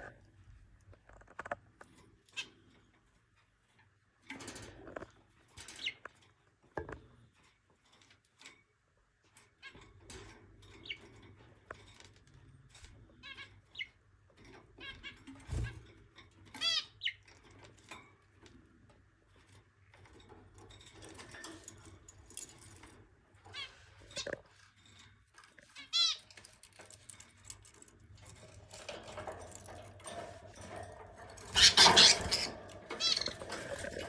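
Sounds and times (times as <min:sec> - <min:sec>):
budgerigars chirping and chattering: 0:31.4 - 0:34.0.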